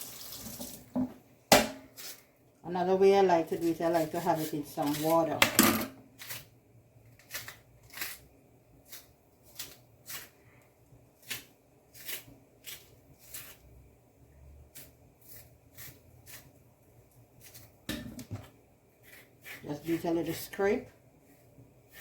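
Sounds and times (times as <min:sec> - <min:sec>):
knife scraping banana skin: 0:01.9 - 0:02.3, 0:03.4 - 0:05.4, 0:06.2 - 0:06.5, 0:07.1 - 0:10.4, 0:11.2 - 0:13.8, 0:14.6 - 0:17.9, 0:18.9 - 0:20.6.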